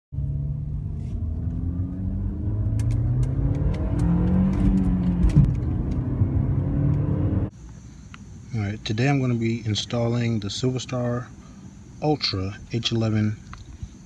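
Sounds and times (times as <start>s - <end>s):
car engine revving: 0.2s - 7.5s.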